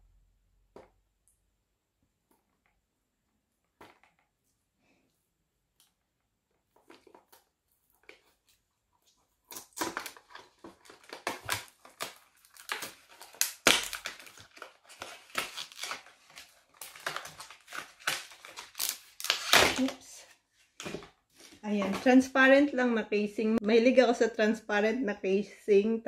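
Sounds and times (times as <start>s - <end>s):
plastic packaging crinkling: 6.7s - 20.1s.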